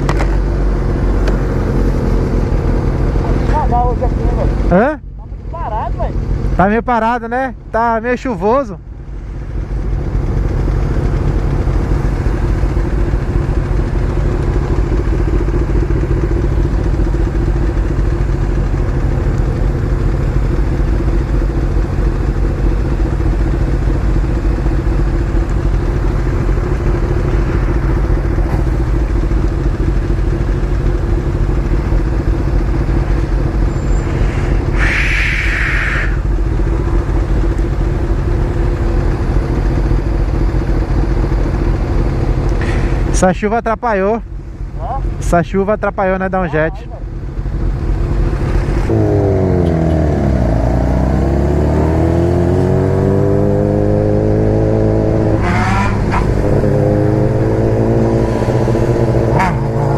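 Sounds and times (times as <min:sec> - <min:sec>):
motorcycle engine running: 0:00.0 - 0:34.9, 0:35.6 - 0:59.9
short hiss: 0:34.2 - 0:36.2.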